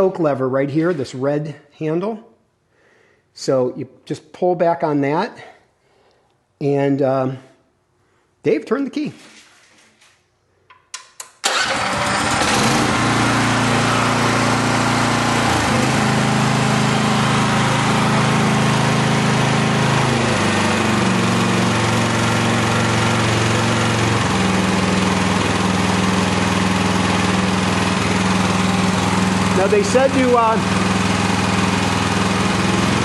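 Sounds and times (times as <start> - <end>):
gasoline engine starting and running: 11.0 - 33.0.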